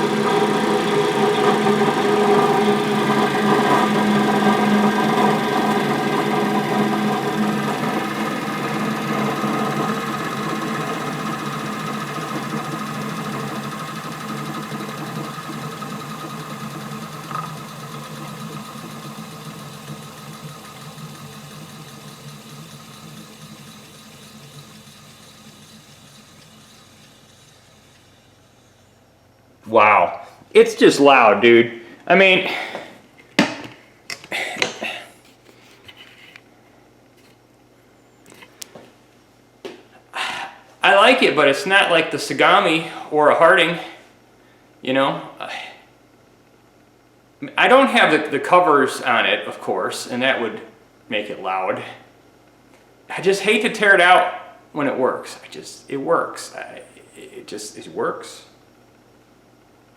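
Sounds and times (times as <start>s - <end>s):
motor-generator hum coasting down: 0.0s - 30.0s, 47.3s - 52.0s.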